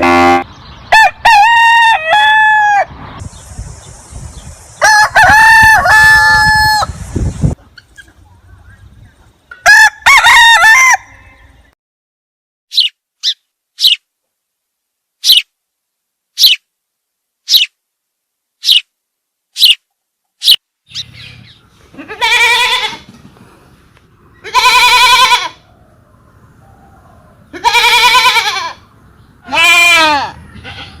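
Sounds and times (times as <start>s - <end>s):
goat bleating: 21.9s - 23.1s, 24.4s - 25.6s, 27.5s - 31.0s.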